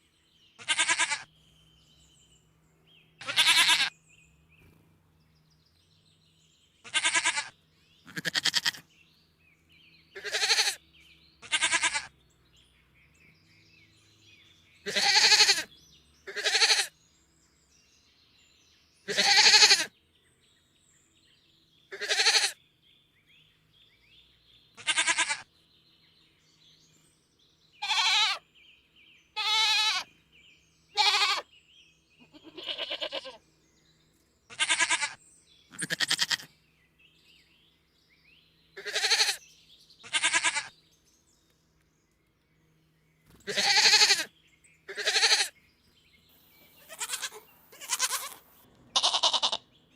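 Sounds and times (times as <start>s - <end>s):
goat bleating: 0.6s - 1.3s, 3.2s - 3.9s, 6.8s - 8.8s, 10.2s - 10.8s, 11.4s - 12.2s, 14.8s - 15.7s, 16.3s - 16.9s, 19.1s - 19.9s, 21.9s - 22.6s, 24.8s - 25.5s, 27.8s - 28.4s, 29.4s - 30.1s, 31.0s - 31.5s, 32.2s - 33.4s, 34.5s - 36.5s, 38.8s - 39.4s, 40.0s - 40.7s, 43.4s - 44.3s, 44.9s - 45.5s, 46.7s - 49.7s.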